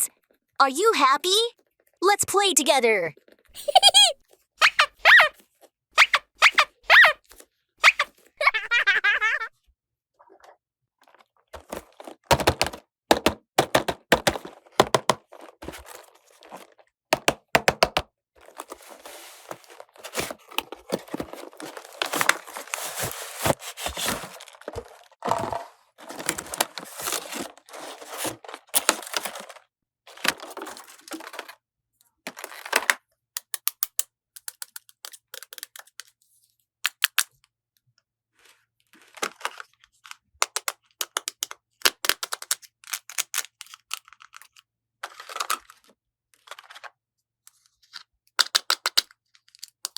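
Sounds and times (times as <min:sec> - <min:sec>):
plastic packaging crinkling and tearing: 0:14.2 - 0:16.9, 0:18.4 - 0:31.5
plastic toy pieces clicking: 0:32.8 - 0:36.2, 0:36.9 - 0:37.4, 0:40.4 - 0:44.6, 0:48.4 - 0:49.9.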